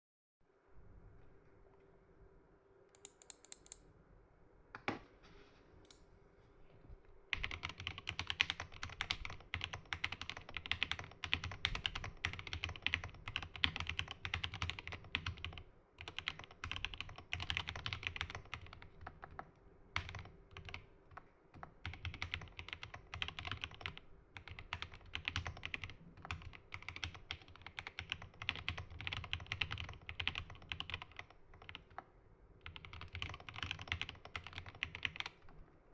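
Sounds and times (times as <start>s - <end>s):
typing on mechanical keyboard: 7.3s - 32.0s, 32.6s - 35.6s.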